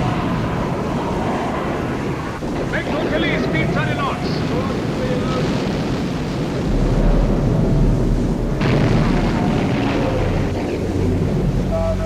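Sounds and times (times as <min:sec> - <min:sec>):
deep rumbling explosion boom: 0:00.0 - 0:12.0
dense battle din: 0:02.4 - 0:12.0
sudden blast: 0:06.5 - 0:12.0.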